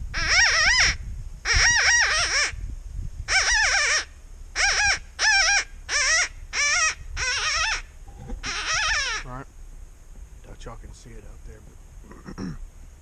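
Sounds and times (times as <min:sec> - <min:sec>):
predator call squealing: 0:00.1 - 0:02.6, 0:03.3 - 0:09.5.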